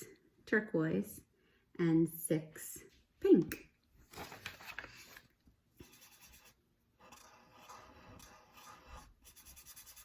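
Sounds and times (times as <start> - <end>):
faint scratching of crayon on paper: 5.8 - 10.0.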